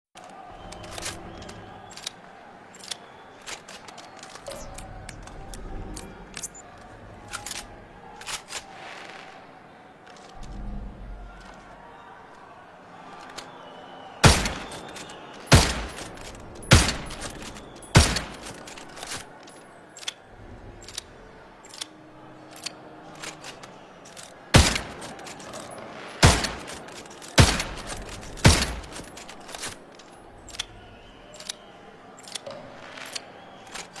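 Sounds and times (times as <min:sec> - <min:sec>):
light gun clicks: 0:00.2 - 0:06.6, 0:20.8 - 0:34.0
pistol shots: 0:14.2 - 0:18.8, 0:24.5 - 0:25.1, 0:25.9 - 0:29.7.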